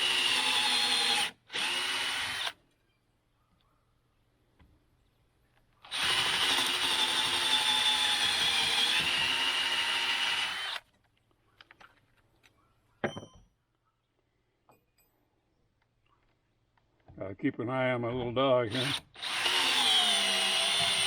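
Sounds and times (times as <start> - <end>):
power drill driving screw: 0.0 - 2.6, 5.9 - 10.8, 18.7 - 21.0.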